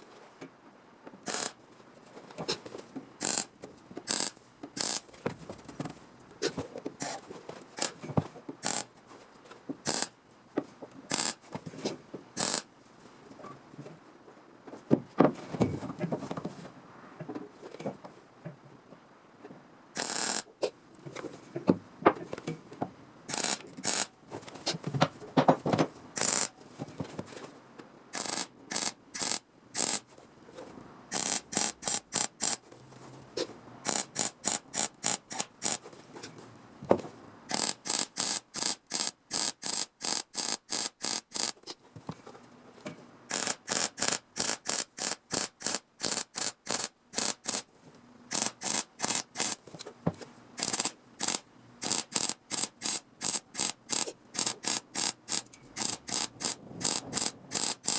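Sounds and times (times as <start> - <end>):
welding crackling pulses: 1.3 - 1.6, 3.2 - 3.5, 4.1 - 5.1, 7.8 - 8.0, 9.9 - 10.1, 11.1 - 11.4, 12.4 - 12.7, 23.3 - 24.1, 26.2 - 26.5, 28.2 - 30.1, 31.1 - 32.6, 33.8 - 35.8, 37.5 - 41.6, 43.3 - 47.7, 48.3 - 49.6, 50.6 - 57.9.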